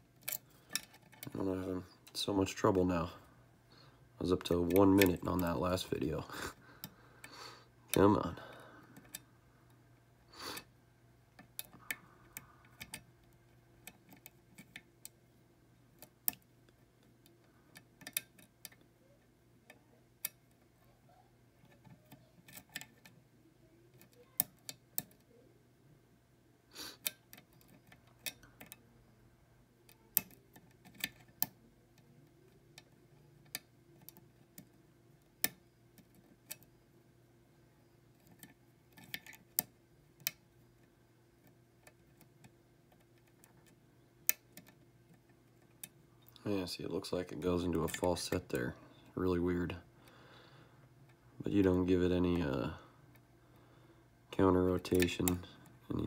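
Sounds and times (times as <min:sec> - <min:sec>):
lock picking metallic clicks: 0:00.2 - 0:01.3, 0:17.7 - 0:18.8, 0:27.0 - 0:28.8, 0:29.9 - 0:36.7, 0:38.1 - 0:40.4.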